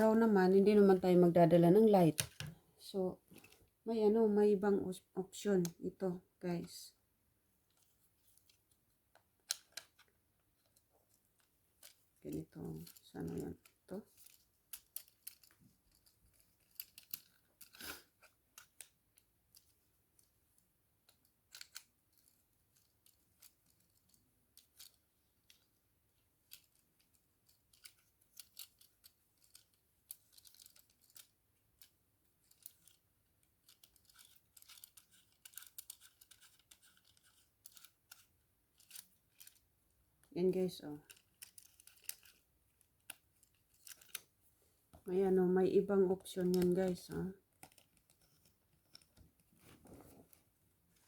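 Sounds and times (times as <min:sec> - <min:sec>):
gadget clicks and ticks: 0:33.6 - 0:39.6, 0:45.7 - 0:49.4.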